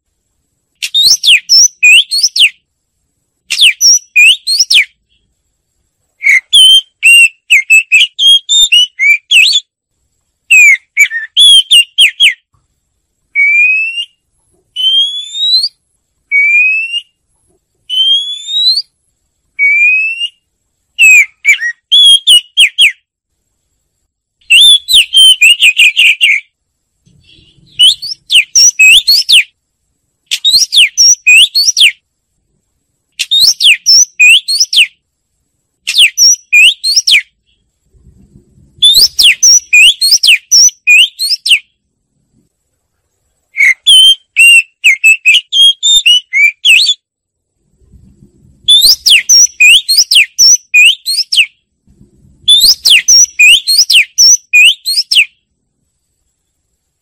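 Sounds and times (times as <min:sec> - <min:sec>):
bird singing: 0:00.8 - 0:02.6, 0:03.5 - 0:05.3, 0:06.2 - 0:09.7, 0:10.5 - 0:12.5, 0:14.8 - 0:17.2, 0:17.9 - 0:18.9, 0:21.0 - 0:23.1, 0:24.4 - 0:26.5, 0:27.2 - 0:29.6, 0:30.3 - 0:32.0, 0:33.2 - 0:35.0, 0:35.9 - 0:37.7, 0:38.8 - 0:41.8, 0:43.6 - 0:47.0, 0:48.7 - 0:51.6, 0:52.5 - 0:55.4.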